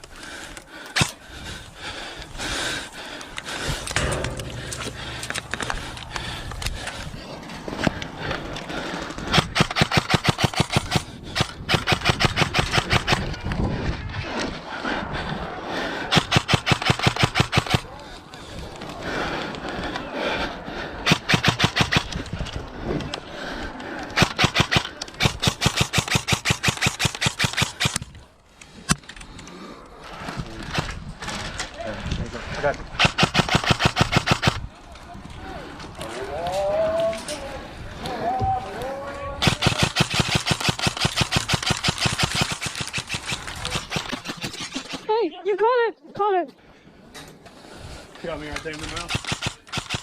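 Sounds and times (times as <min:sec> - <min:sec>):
airsoft rifle firing full auto: 0:24.2 - 0:28.0, 0:33.0 - 0:34.6, 0:39.4 - 0:45.1, 0:49.0 - 0:50.0.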